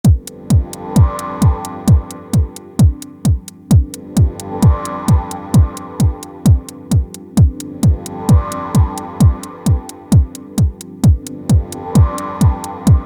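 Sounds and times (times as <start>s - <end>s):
drum machine kick: 0.0s - 13.0s
held synthesizer chords: 0.0s - 13.0s
hi-hat ticks: 0.0s - 13.0s.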